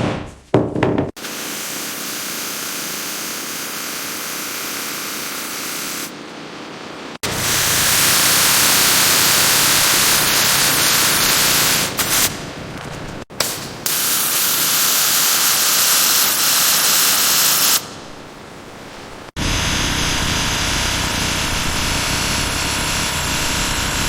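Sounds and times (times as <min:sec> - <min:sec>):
jet spray hissing: 0:01.2 - 0:06.1, 0:07.2 - 0:12.4, 0:13.4 - 0:17.9.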